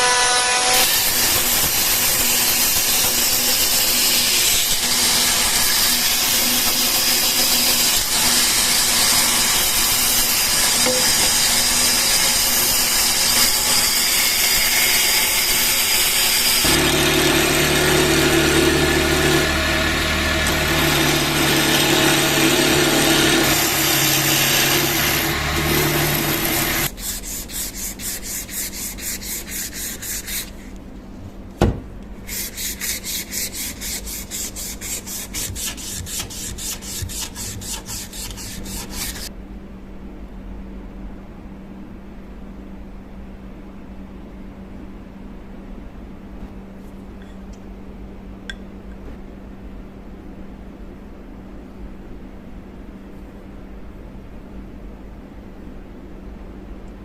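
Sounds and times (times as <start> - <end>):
power sander motor hum: 16.6 - 26.9
sanding on wood: 20.6 - 30.7, 32.2 - 39.3.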